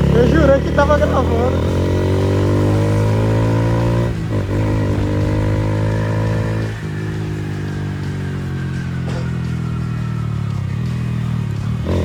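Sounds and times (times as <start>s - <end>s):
motorcycle engine exhaust note: 0.0s - 12.0s.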